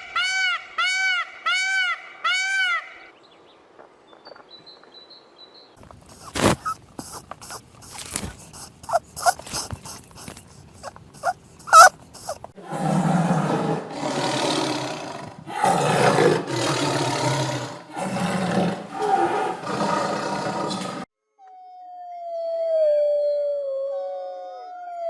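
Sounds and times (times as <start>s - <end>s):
large animal roaring: 12.6s - 21.0s.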